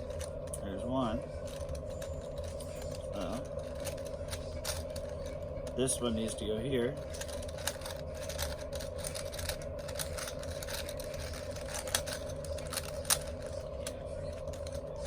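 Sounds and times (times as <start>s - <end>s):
steady background hum: 0.0s - 15.0s
puzzle cube plastic clicks: 7.1s - 13.6s.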